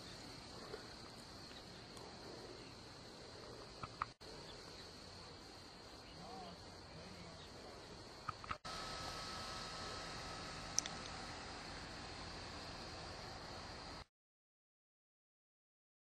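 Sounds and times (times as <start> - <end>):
crickets chirring: 0.0 - 14.0
low hiss: 0.0 - 14.1
small clicks: 3.8 - 4.2, 8.2 - 8.6, 10.7 - 11.2.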